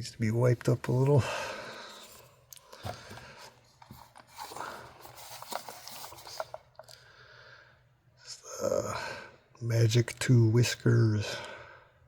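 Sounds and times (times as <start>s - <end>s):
rustling wrapping: 1.9s - 7.0s.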